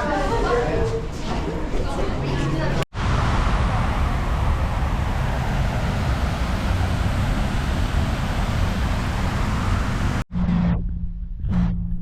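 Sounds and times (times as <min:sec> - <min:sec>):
vehicle rumble with hiss: 0:03.0 - 0:10.2.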